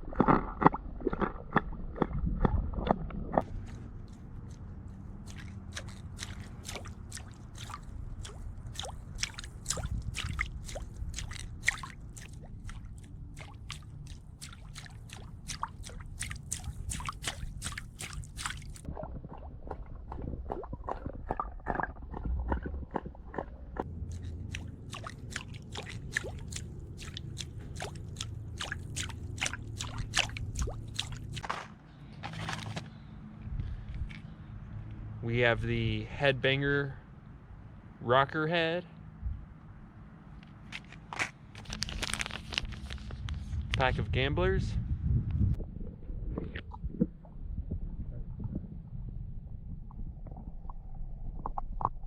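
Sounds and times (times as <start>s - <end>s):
water sloshing and dripping: 0.0s - 33.0s
steady low rumble: 0.0s - 40.4s, 41.6s - 52.0s.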